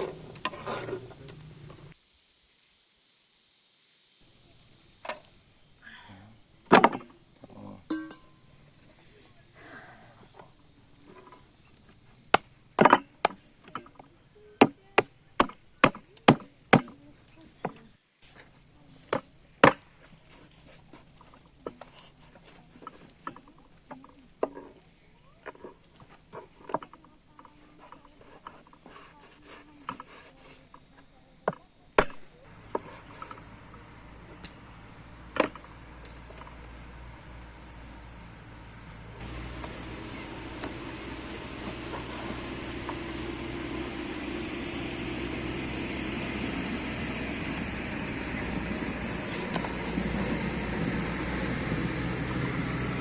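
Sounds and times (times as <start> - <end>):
blade chopping wood: 6.7 - 7.1, 12.2 - 14.0, 14.6 - 17.0, 19.1 - 19.9, 31.5 - 34.7, 38.7 - 51.1.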